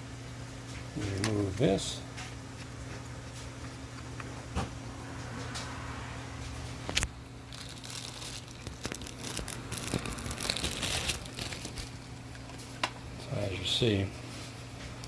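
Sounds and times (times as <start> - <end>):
plastic packaging crinkling and tearing: 6.9 - 12.8.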